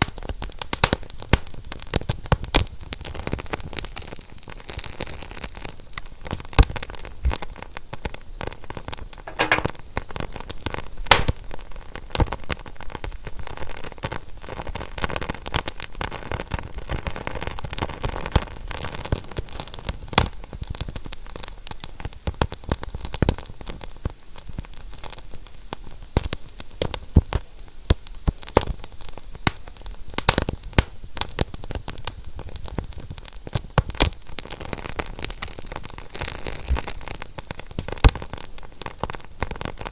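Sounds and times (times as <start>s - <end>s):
wood fire crackling: 0.0s - 5.0s, 5.8s - 9.9s, 10.5s - 12.2s, 26.2s - 39.9s.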